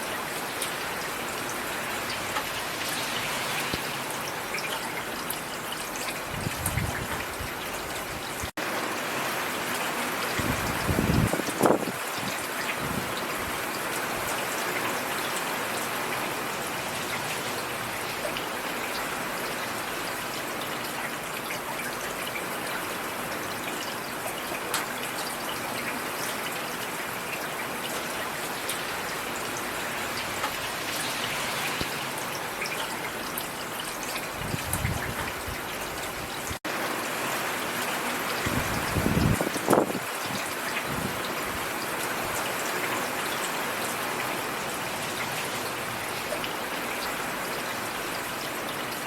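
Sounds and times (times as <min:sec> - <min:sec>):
rain falling: 0:00.0 - 0:49.0.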